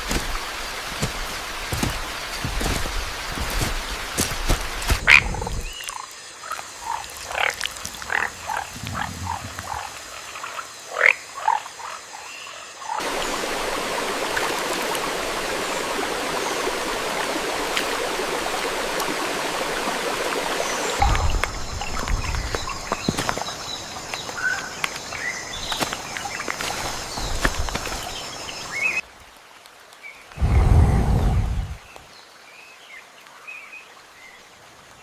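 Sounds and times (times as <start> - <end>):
steady water noise: 0.0 - 35.0
frogs chirping and croaking: 4.9 - 13.1.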